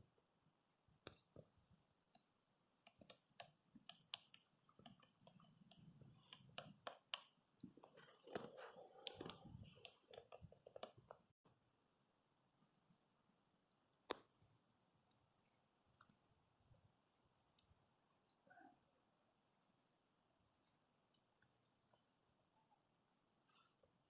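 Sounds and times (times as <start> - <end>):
woodpecker pecking: 2.8 - 11.2.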